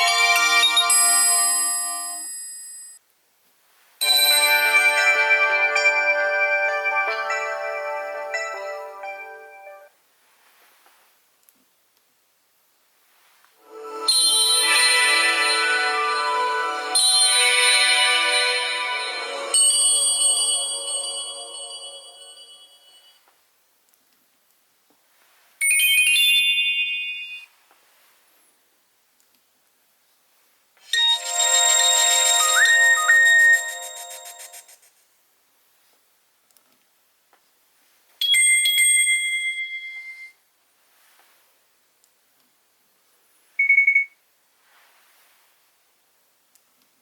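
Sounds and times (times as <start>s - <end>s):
bright high-pitched jingle: 0.0s - 3.0s, 4.0s - 9.9s, 13.6s - 23.2s, 25.6s - 27.5s, 30.9s - 34.8s
mobile phone ringtone: 0.0s - 3.0s, 4.0s - 9.9s, 30.9s - 34.8s, 43.6s - 44.2s
high fluttering beep: 30.9s - 34.8s.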